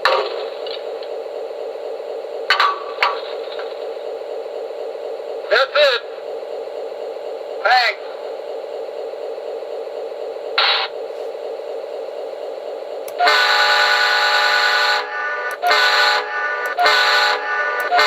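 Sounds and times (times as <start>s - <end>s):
diesel locomotive idling: 0.0s - 18.0s
multi-chime air horn blasts: 13.2s - 18.0s.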